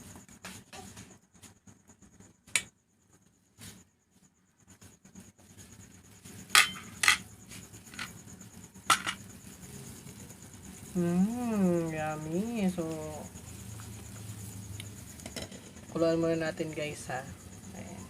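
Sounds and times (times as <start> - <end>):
utensils clinking against a pot: 6.5 - 7.2, 8.9 - 9.2.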